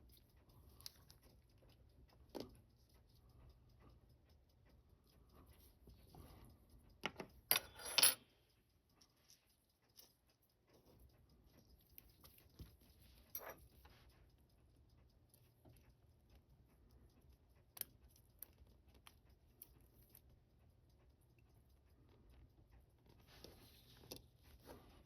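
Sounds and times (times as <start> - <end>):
small metal tools clicking: 6.9 - 10.9, 11.5 - 13.9.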